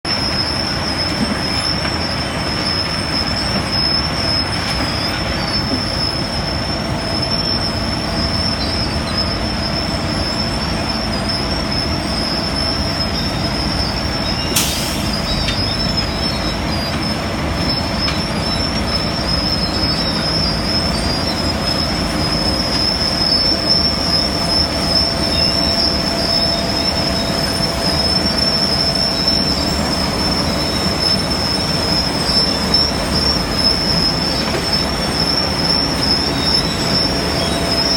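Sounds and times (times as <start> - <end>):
construction machinery rumble: 0.1 - 37.9
high-pitched machine whine: 0.1 - 37.9.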